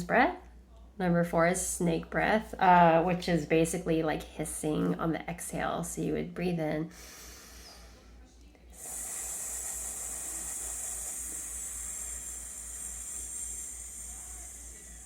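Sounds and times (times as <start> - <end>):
slow hissing exhale: 6.9 - 15.0
woman inhaling quietly: 8.8 - 15.0.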